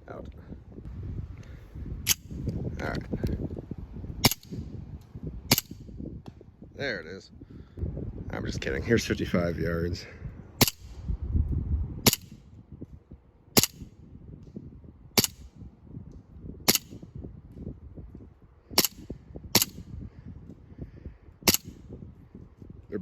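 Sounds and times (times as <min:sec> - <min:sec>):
airsoft pistol shots: 0:05.5 - 0:05.8, 0:12.0 - 0:12.4, 0:13.6 - 0:13.9, 0:15.2 - 0:15.5, 0:16.7 - 0:17.0, 0:19.6 - 0:19.8, 0:21.5 - 0:21.8.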